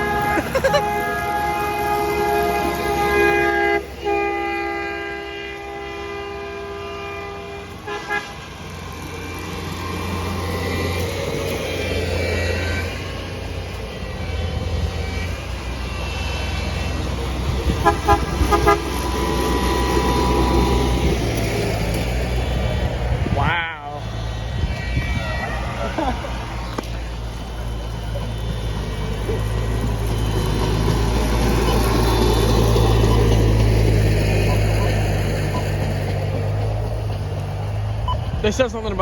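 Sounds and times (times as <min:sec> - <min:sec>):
train horn blasts and toots: 0:00.0 - 0:08.6, 0:14.2 - 0:21.8
rail equipment rumbling by: 0:00.0 - 0:39.0.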